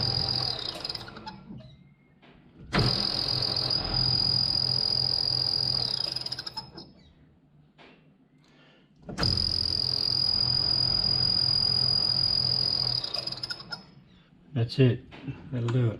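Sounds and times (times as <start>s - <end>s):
metal lathe whining: 0.0s - 1.7s, 2.7s - 6.8s, 9.2s - 13.9s.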